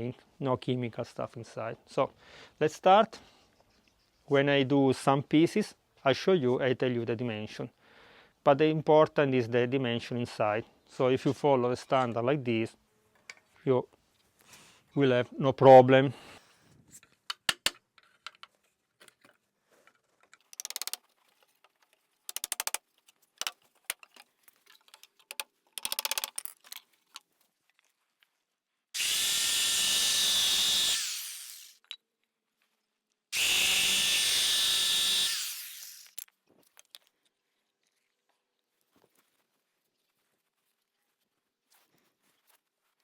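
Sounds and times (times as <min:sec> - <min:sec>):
electric power tool cutting wood: 0:29.0 - 0:31.8, 0:33.4 - 0:36.2.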